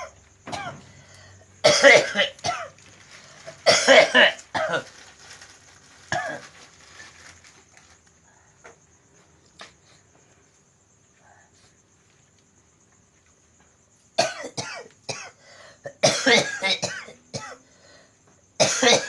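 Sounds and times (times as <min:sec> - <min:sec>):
person coughing: 0:00.0 - 0:00.8, 0:01.6 - 0:02.8, 0:03.6 - 0:04.9, 0:06.1 - 0:06.5, 0:14.2 - 0:17.6, 0:18.6 - 0:19.0.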